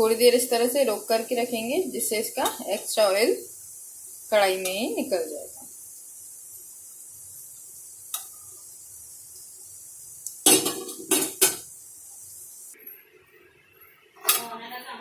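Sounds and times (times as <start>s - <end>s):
faint steady hiss: 0.0s - 15.0s
metal utensils clanking on pan: 2.4s - 2.8s, 10.4s - 11.7s.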